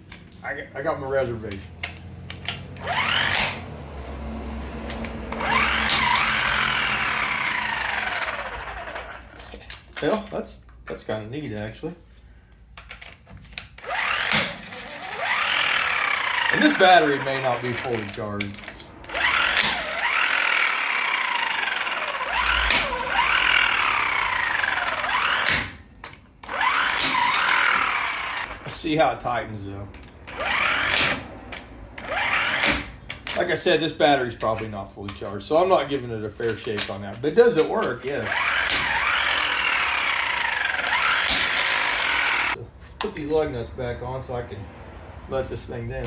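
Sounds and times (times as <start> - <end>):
impact wrench motor whine: 2.7 - 3.8, 4.8 - 9.4, 13.8 - 18.2, 19.0 - 25.8, 26.4 - 28.5, 30.3 - 31.3, 32.0 - 32.9, 38.2 - 42.6.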